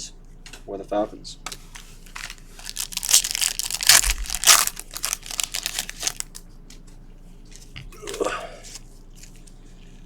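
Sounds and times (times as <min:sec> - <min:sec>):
plastic wrapping torn and crinkled: 0:01.7 - 0:06.4.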